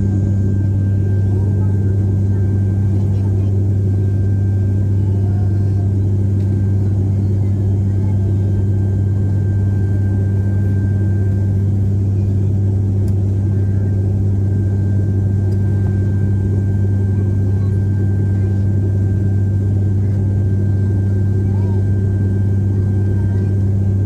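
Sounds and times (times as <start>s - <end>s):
propeller airplane engine drone: 0.0s - 24.0s.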